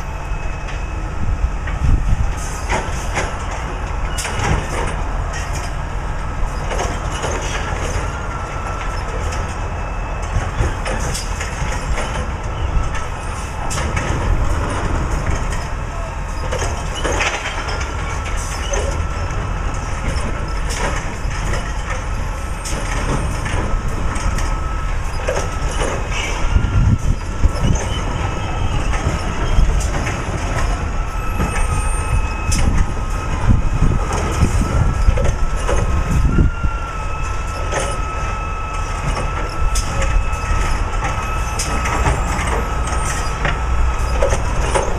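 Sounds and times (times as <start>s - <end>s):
truck engine running: 0.0s - 44.9s.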